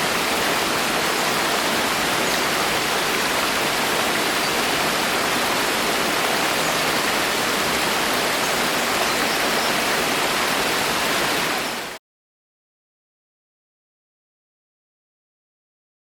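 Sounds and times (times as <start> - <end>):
heavy rain in forest: 0.0 - 12.0.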